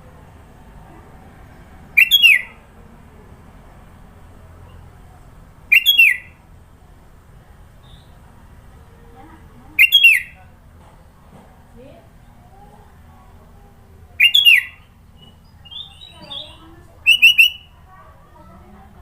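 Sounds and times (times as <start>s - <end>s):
bulbul sharp call: 17.0s - 17.8s.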